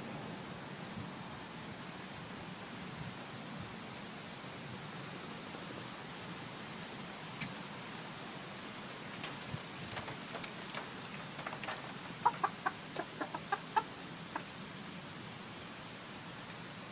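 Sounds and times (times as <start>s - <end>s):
hen ticking: 9.0s - 14.6s
hen clucking: 9.2s - 14.6s.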